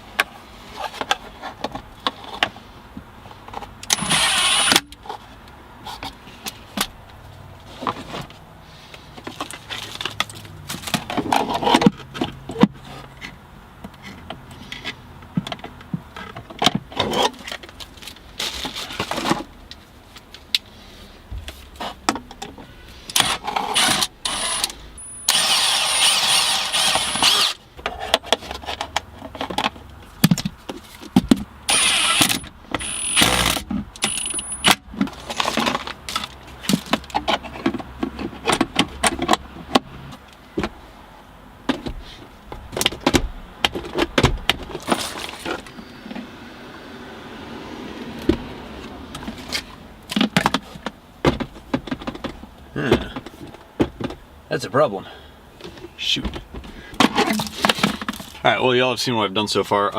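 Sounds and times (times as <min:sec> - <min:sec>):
electric power tool whining: 0:03.9 - 0:04.8, 0:23.5 - 0:27.6, 0:31.7 - 0:34.8
hardware parts clicking and rattling: 0:21.5 - 0:40.3.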